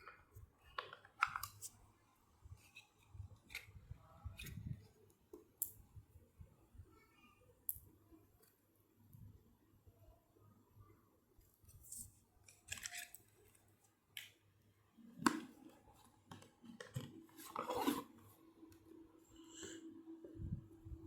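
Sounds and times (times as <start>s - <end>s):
packaging scraping and rustling: 16.8s - 18.2s.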